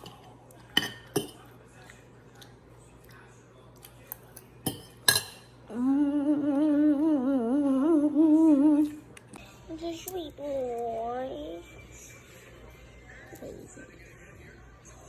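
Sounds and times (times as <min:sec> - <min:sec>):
spoon clinking against bowl: 0:04.6 - 0:05.5
girl humming: 0:05.7 - 0:09.0.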